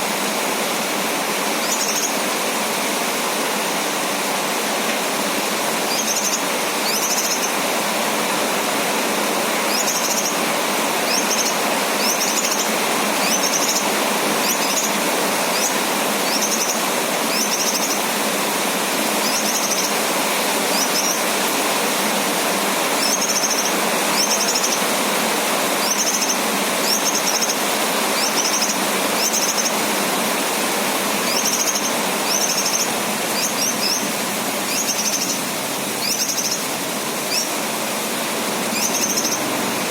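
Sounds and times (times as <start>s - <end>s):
rain hissing: 0.0s - 39.9s
bulbul chirping: 36.0s - 36.7s, 38.8s - 39.5s.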